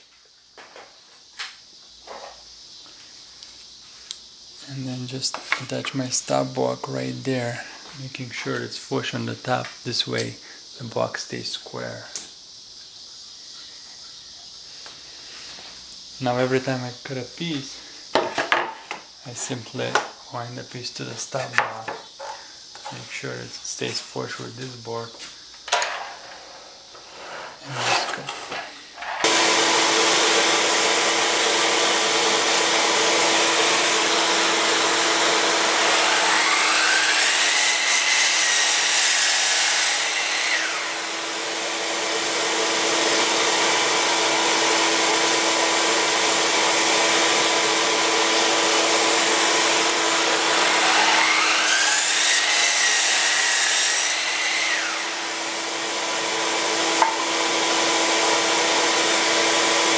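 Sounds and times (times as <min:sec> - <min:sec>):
miter saw cutting wood: 0:27.2 - 0:59.9.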